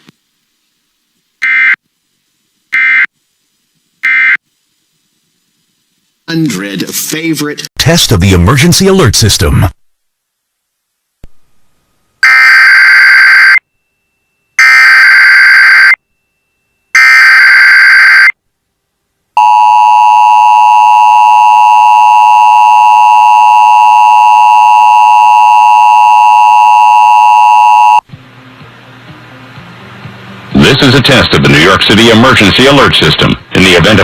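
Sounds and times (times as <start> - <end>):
two-tone attention signal: 19.4 - 28.0.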